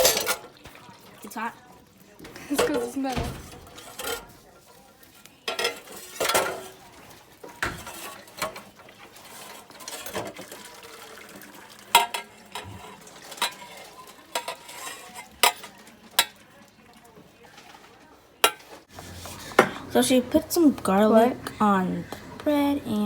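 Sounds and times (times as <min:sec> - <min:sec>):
metal utensils clinking on dishes: 0:00.0 - 0:19.9.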